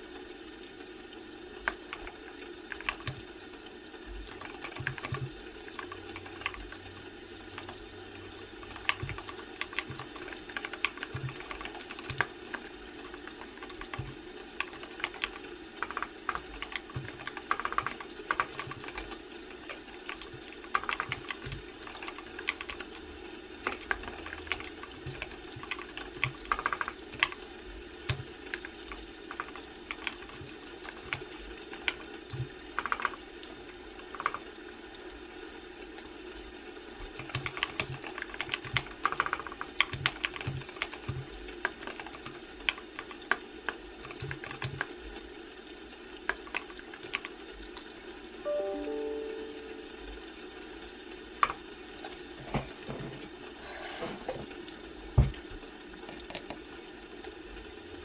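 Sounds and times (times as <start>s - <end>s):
keyboard typing clicks: 4.3s - 6.8s, 8.6s - 22.9s, 23.6s - 27.4s, 31.9s - 33.2s, 37.1s - 43.4s, 44.0s - 44.9s.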